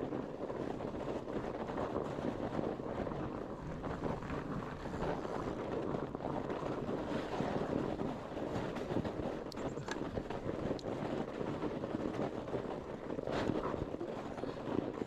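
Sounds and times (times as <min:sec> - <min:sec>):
bike tyres rolling on dirt: 0:00.0 - 0:15.0
wind on microphone: 0:00.0 - 0:15.0.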